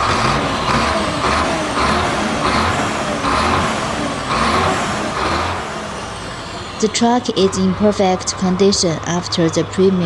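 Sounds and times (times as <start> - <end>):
diesel truck engine running: 0.0 - 10.0.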